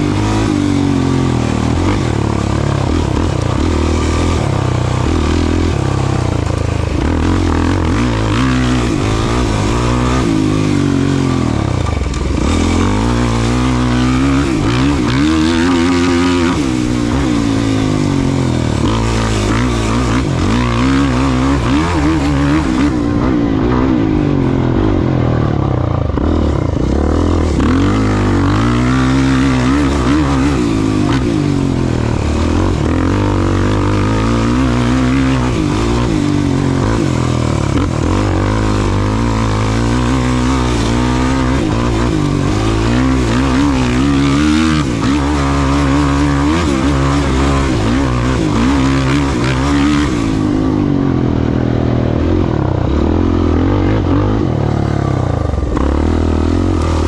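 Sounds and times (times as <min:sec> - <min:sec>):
racing engine revving: 0:00.0 - 0:57.0.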